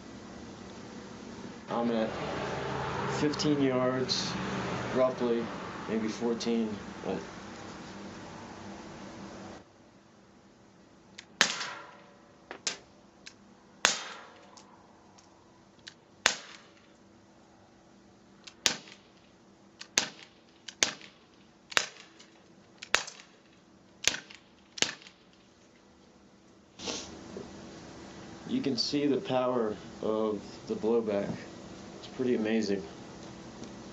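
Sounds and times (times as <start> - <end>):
pellet pistol shots cracking: 11.2 - 12.8, 13.8 - 14.7, 16.2 - 16.8, 18.5 - 19.2, 19.8 - 25.3.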